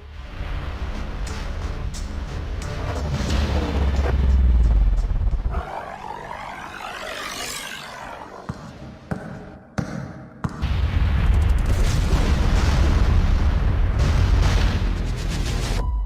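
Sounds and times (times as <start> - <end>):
swirling sweeping sound: 3.6 - 9.0.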